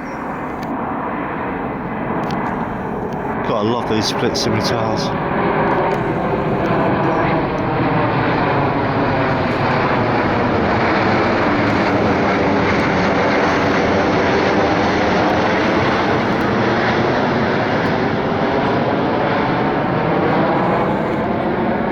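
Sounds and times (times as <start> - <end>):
jet engines roaring past: 0.0 - 21.9.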